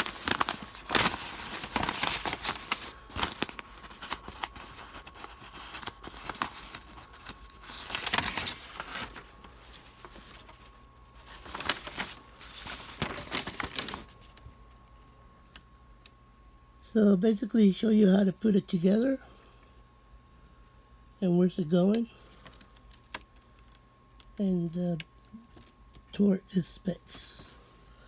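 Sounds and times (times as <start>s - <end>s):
paper rustling and crinkling: 0.0s - 14.8s.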